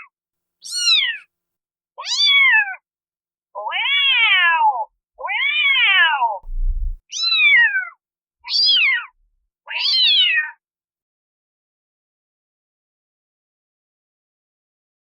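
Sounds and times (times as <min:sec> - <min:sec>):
low rumble: 0:06.4 - 0:07.0.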